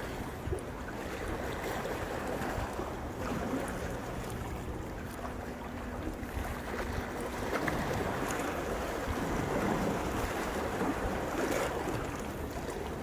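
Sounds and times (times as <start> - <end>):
sea waves washing in: 0.0 - 13.0
wind buffeting the microphone: 5.8 - 13.0.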